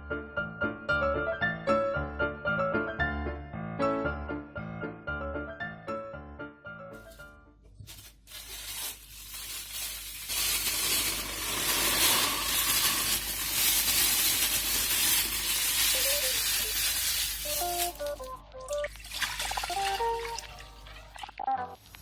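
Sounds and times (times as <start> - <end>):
background music: 0.0 - 7.6, 17.4 - 22.0
food sizzling in a frying pan: 10.0 - 17.9.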